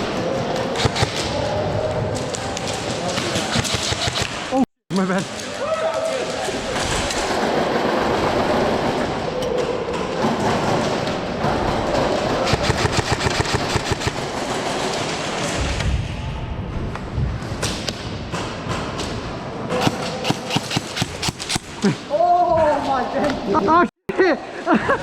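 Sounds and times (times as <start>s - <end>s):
airsoft guns firing: 0.6s - 1.5s, 2.6s - 4.6s, 11.8s - 15.5s, 19.8s - 21.8s.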